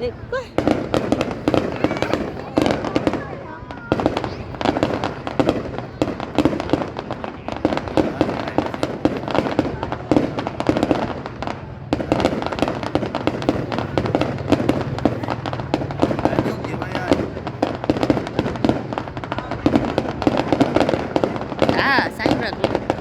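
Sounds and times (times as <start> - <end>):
fireworks bangs and crackling: 0.0 - 23.0.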